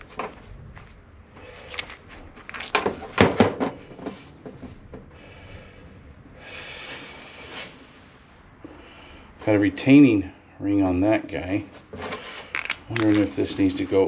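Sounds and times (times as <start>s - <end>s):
small metal parts clicking: 1.6s - 3.1s, 12.5s - 13.6s.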